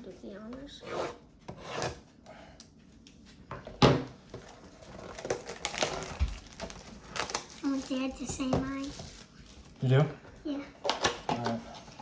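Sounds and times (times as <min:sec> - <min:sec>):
foil wrapper crinkling: 0:04.4 - 0:10.0
scissors cutting foil pack: 0:04.8 - 0:08.1.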